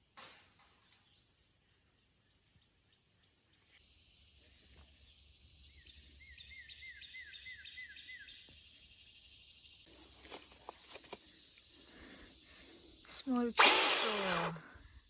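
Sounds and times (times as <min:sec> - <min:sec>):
high insect drone: 0:08.0 - 0:15.0.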